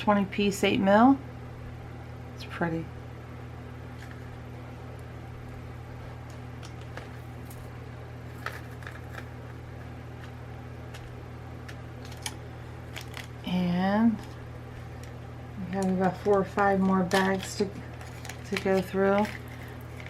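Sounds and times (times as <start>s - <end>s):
steady low hum: 0.0s - 20.0s
plastic bead packets rustling: 6.3s - 13.4s, 14.2s - 20.0s.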